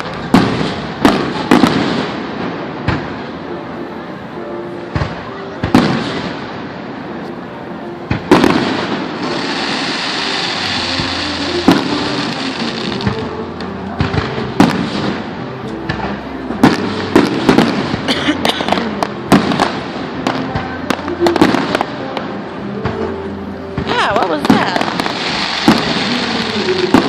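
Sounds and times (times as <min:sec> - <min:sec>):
fireworks bangs and crackles: 0:00.0 - 0:03.8, 0:04.9 - 0:07.2, 0:08.0 - 0:23.1, 0:23.7 - 0:27.0
fireworks hissing: 0:08.1 - 0:18.1, 0:23.8 - 0:27.0.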